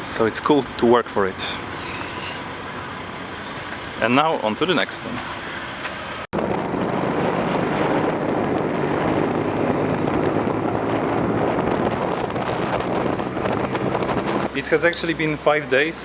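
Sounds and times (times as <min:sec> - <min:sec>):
low engine hum: 0:05.2 - 0:16.0
wind on microphone: 0:06.3 - 0:14.6.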